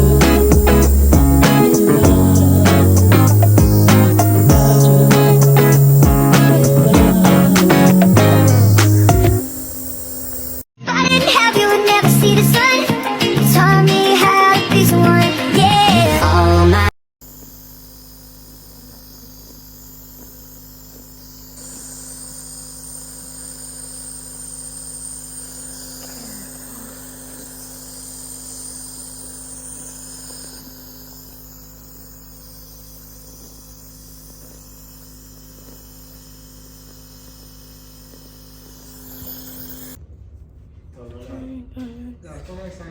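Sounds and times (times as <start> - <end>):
nebulizer compressor humming: 0.0 - 10.7, 17.2 - 40.0
thin high whine: 0.0 - 40.0.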